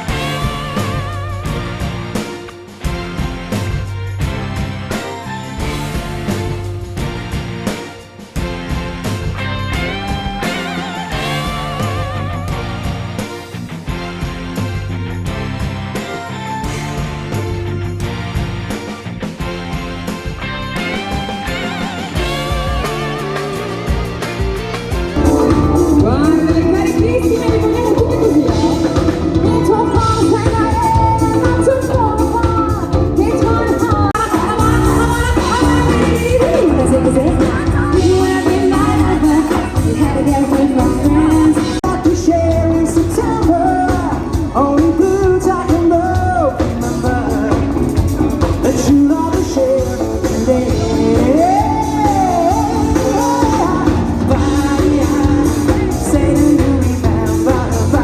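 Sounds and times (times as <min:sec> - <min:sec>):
live pop-rock band: 0:00.0 - 0:58.0
lead singer singing: 0:25.2 - 0:58.0.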